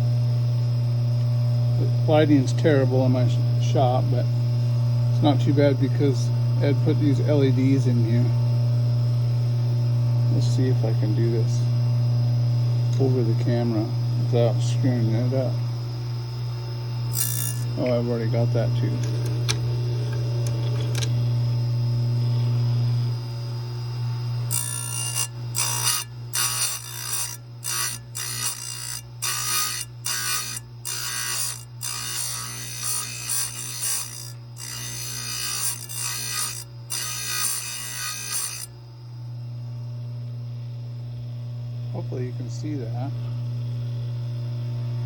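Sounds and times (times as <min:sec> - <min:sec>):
grinder motor humming: 0:01.0 - 0:39.5
grinding wheel on chain cutters: 0:17.1 - 0:21.1, 0:24.5 - 0:38.7.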